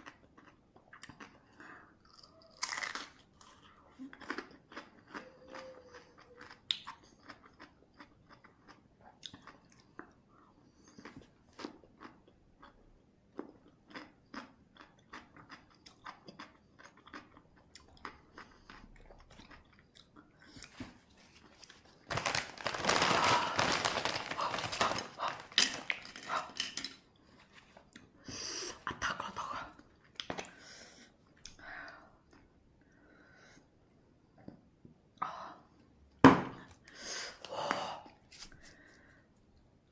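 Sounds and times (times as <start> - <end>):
crunchy cucumber chewing: 0.0 - 10.1, 13.4 - 23.6.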